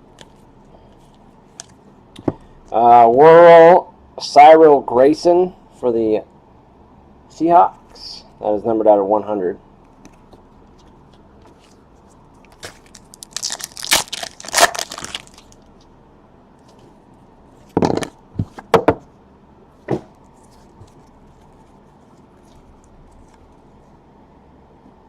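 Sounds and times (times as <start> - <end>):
plastic wrapping crinkling and tearing: 11.6 - 15.8, 20.2 - 23.7.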